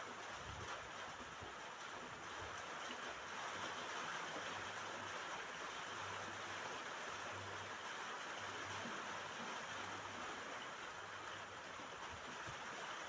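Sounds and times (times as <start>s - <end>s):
rain falling on a roof: 0.0s - 13.0s.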